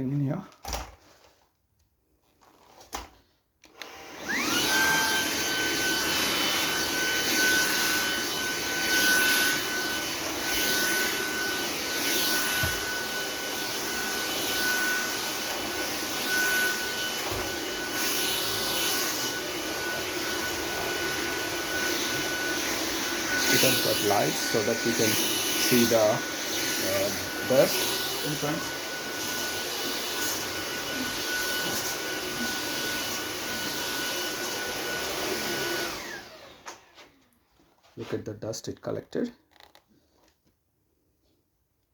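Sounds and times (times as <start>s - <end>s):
vacuum cleaner motor whine: 3.7s - 37.2s.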